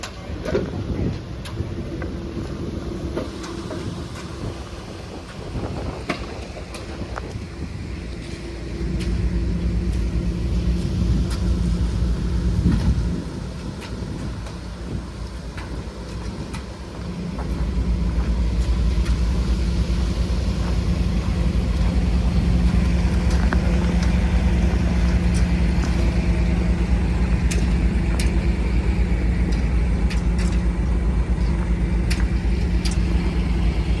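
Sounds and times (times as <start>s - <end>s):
heavy engine running: 0.0s - 34.0s
sharp clicks and knocks: 25.1s - 33.4s.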